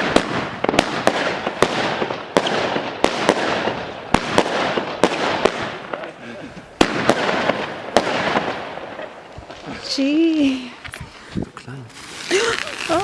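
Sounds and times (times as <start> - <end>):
firecracker bangs: 0.0 - 6.2, 6.8 - 9.7
fireworks crackling: 0.0 - 13.0.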